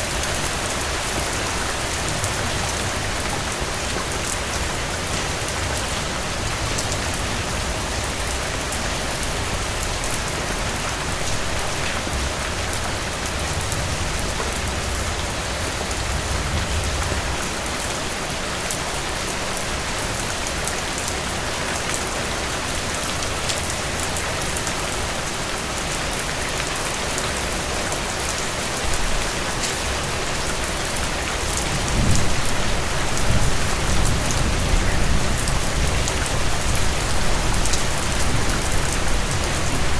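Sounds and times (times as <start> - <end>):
steady rain falling: 0.0 - 39.9
thunder rumbling: 31.7 - 39.9.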